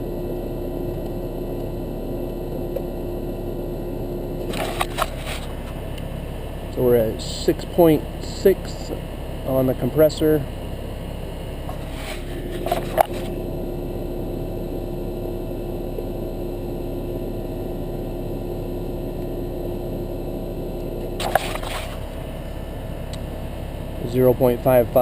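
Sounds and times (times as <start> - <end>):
air conditioner humming: 0.0 - 25.0
scraping and clicking handling noises: 4.4 - 5.8, 11.7 - 13.4.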